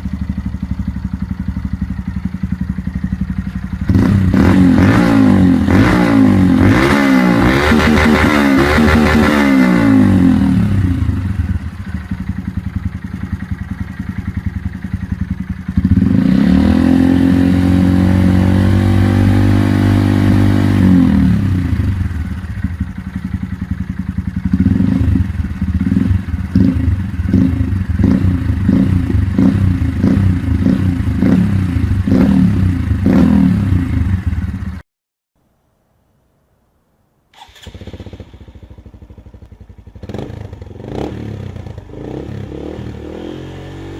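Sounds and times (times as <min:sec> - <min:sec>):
motorcycle engine revving: 0:00.0 - 0:34.8, 0:37.4 - 0:43.9
quieter engine starting: 0:37.3 - 0:43.0.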